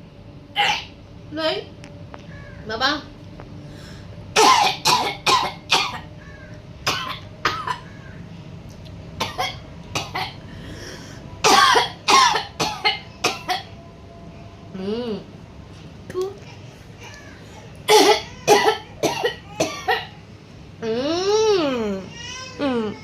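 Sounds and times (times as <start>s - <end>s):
person forced coughing: 4.4s - 6.0s, 11.5s - 13.7s, 17.9s - 20.1s.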